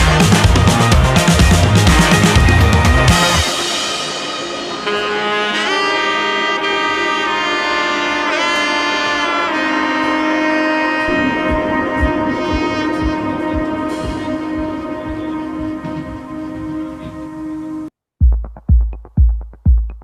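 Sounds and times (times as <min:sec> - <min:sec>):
drum beat: 0:00.0 - 0:03.6, 0:11.1 - 0:17.4, 0:18.2 - 0:20.0
melody of long held notes: 0:00.0 - 0:17.9.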